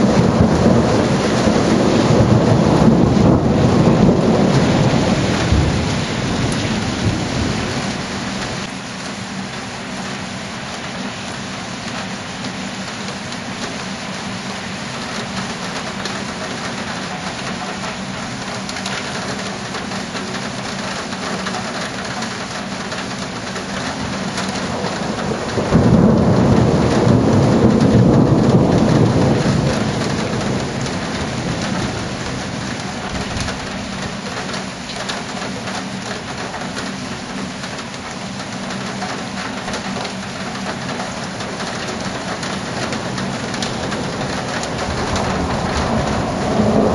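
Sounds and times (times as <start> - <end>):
thunder rumbling: 0.0 - 8.7, 15.1 - 46.9
heavy rain: 0.0 - 46.9.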